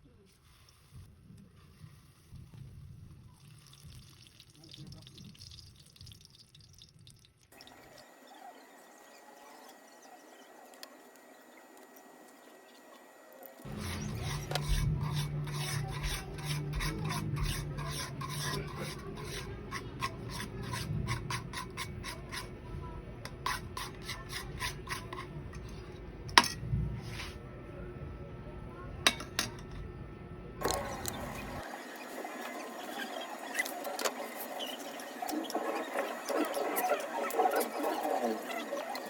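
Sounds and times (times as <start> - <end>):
spatula scraping sticky dough: 13.7 - 22.6, 23.3 - 25.9.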